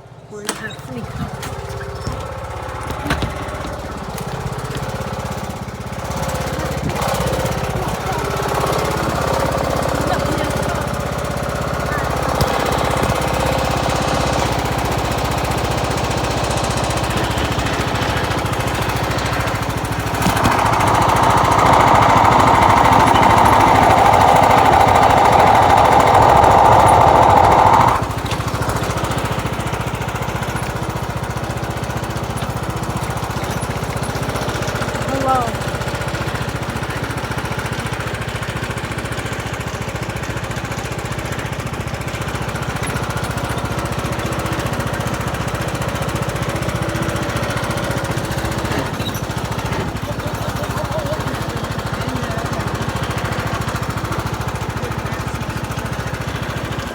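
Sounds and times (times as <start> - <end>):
riding lawn mower engine running: 0.0 - 56.9
loud noise: 0.6 - 30.3.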